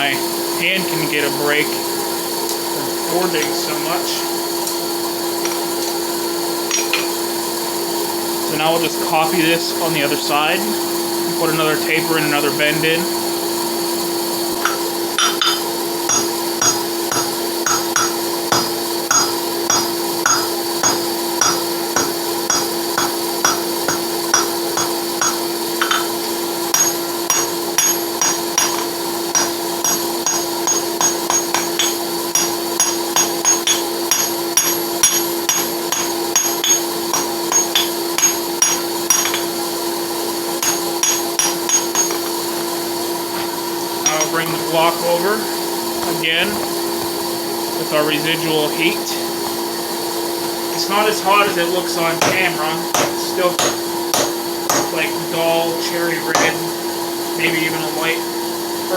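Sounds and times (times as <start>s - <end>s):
forge humming: 0.0s - 58.9s
hammer striking steel on anvil: 6.7s - 7.2s, 14.6s - 39.6s, 40.6s - 42.7s, 44.0s - 45.0s, 51.4s - 55.0s, 56.3s - 56.7s.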